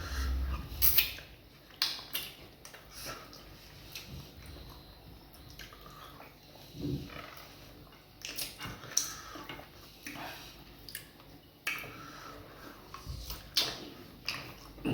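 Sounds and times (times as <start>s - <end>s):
lip smacks: 10.8s - 12.0s.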